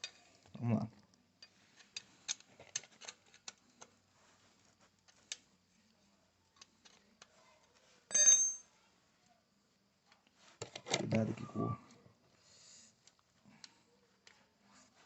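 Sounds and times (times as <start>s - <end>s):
ringing metal clink: 8.1s - 8.7s.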